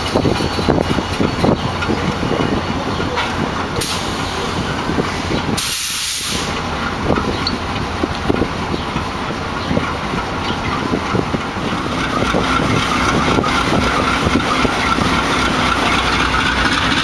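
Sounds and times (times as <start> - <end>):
diesel locomotive engine rumbling: 0.0 - 17.0
compressed air hissing: 3.8 - 6.6.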